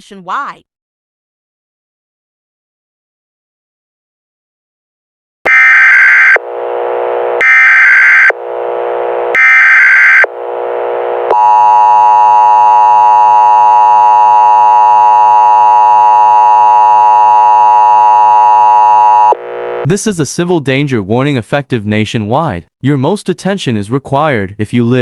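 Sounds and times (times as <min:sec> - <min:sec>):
screeching data bursts: 0:05.5 - 0:06.4, 0:07.4 - 0:08.4, 0:09.3 - 0:10.3
harsh two-tone attention signal: 0:05.5 - 0:06.6, 0:07.4 - 0:08.4, 0:09.3 - 0:10.3.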